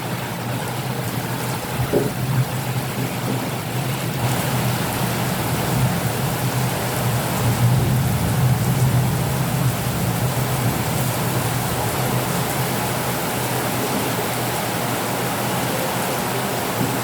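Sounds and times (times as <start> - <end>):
heavy rain: 0.0 - 17.0.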